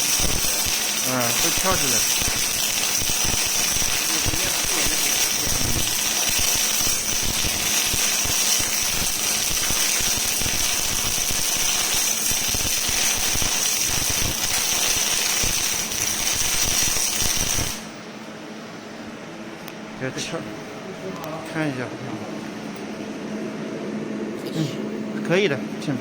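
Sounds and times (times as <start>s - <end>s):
welding arc crackling: 0.0s - 17.9s
steady high whine: 0.0s - 26.0s.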